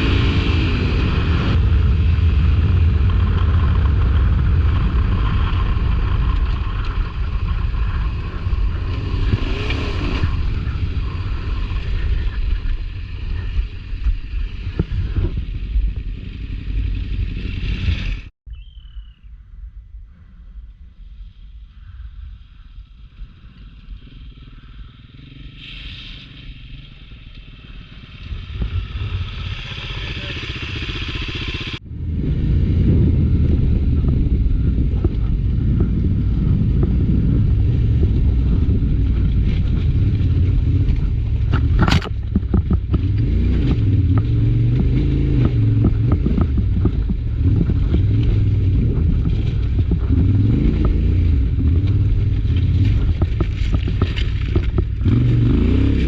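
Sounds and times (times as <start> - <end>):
motorcycle engine under load: 23.1 - 56.0.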